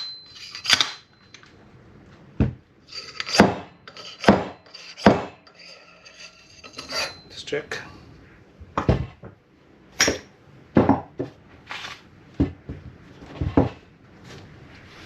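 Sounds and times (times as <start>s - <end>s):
metal clanks and knocks: 0.0s - 1.5s, 2.4s - 7.3s.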